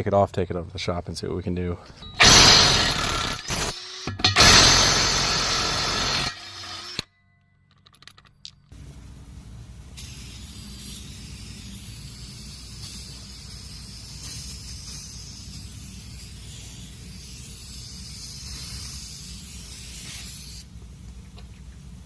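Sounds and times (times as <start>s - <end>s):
compressed air hissing: 9.9s - 20.7s.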